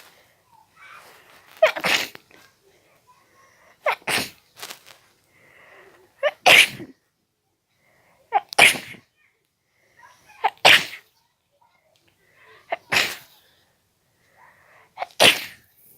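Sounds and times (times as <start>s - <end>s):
person sneezing: 0.9s - 2.2s, 3.7s - 4.4s, 6.2s - 7.0s, 8.3s - 9.0s, 10.4s - 11.1s, 12.7s - 13.4s, 15.0s - 15.7s.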